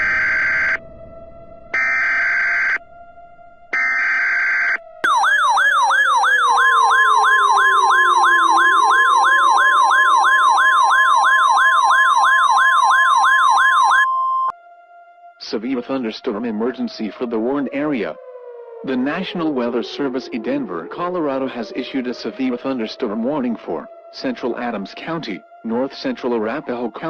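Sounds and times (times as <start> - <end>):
low sliding siren tone: 0.0 - 27.0
yelping siren: 0.0 - 27.0
steady attention tone: 1.8 - 14.5.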